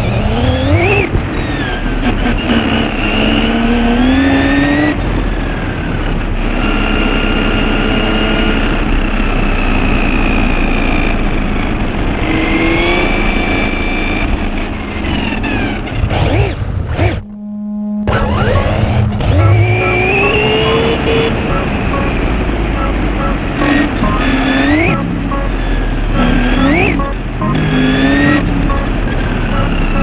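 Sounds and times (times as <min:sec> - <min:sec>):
electric rc car motor whine: 0:00.0 - 0:17.3.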